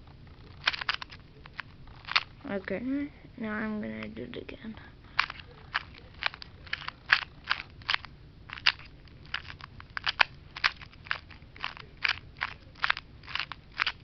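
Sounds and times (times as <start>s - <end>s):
puzzle cube pieces clicking: 0.6s - 2.3s, 5.2s - 14.0s.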